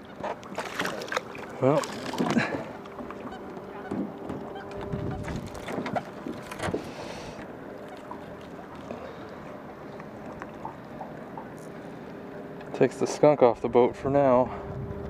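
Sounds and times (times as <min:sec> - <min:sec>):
faint steady hum: 0:00.0 - 0:15.0
wind noise: 0:04.8 - 0:05.9, 0:13.6 - 0:15.0.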